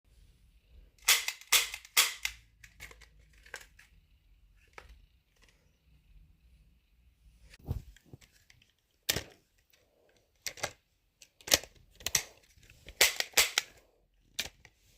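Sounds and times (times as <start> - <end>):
toy gun clicking: 1.0 - 3.7, 12.9 - 13.8.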